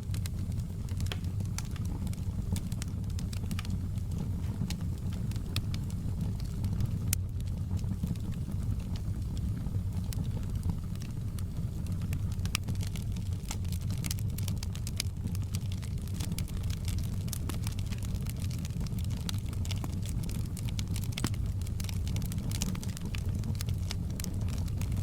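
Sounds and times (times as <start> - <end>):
log fire crackling: 0.0 - 25.0
low steady rumble: 0.0 - 25.0.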